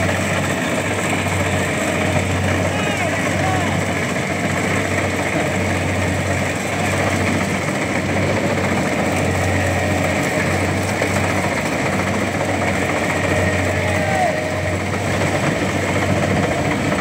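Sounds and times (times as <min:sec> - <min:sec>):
combine harvester engine running: 0:00.0 - 0:17.0.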